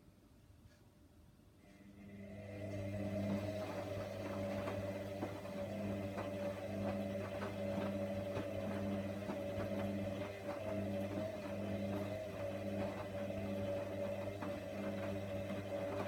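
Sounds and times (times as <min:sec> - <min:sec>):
washing machine motor hum: 0:01.6 - 0:16.0.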